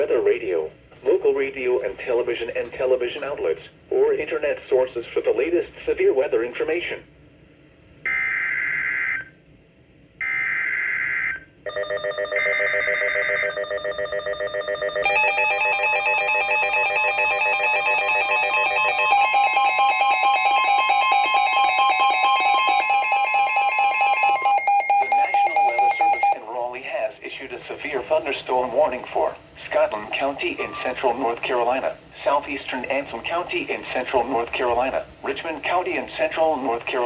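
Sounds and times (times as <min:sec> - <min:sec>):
fast-pulsing electronic alarm: 0:08.1 - 0:09.3, 0:10.2 - 0:26.4
steady warning tone: 0:10.2 - 0:37.0
screeching digital data tones: 0:17.4 - 0:26.4.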